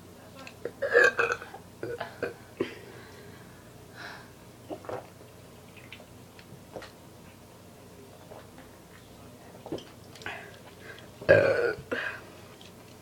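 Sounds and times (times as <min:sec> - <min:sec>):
person breathing: 0:02.6 - 0:04.4
person gulping soda: 0:04.7 - 0:05.2.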